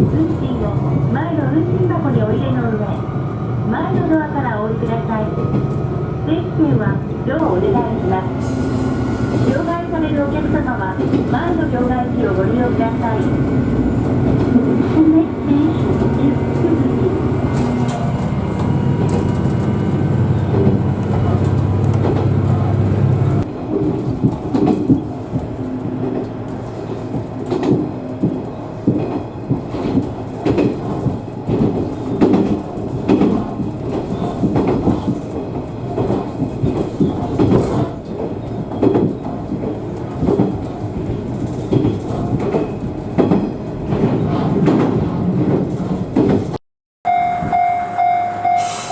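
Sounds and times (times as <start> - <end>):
railcar rattling: 0.0 - 48.9
diesel engine humming: 7.3 - 23.5.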